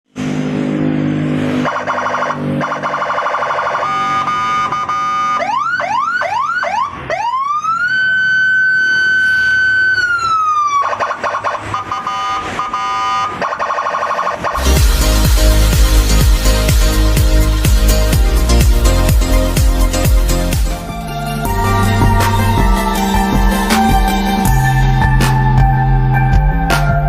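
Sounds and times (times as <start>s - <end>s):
electronic siren: 1.4s - 16.0s, 20.8s - 26.2s.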